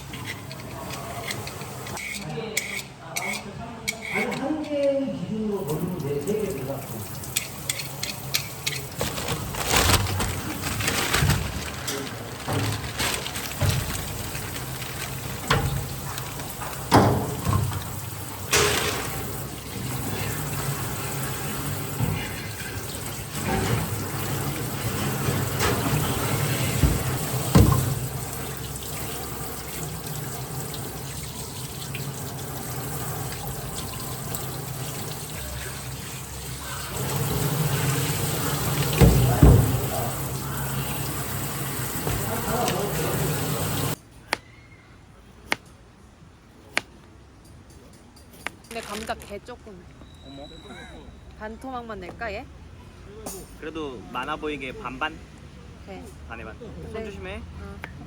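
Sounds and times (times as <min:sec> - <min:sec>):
running water: 0:00.0 - 0:02.0, 0:05.5 - 0:44.0.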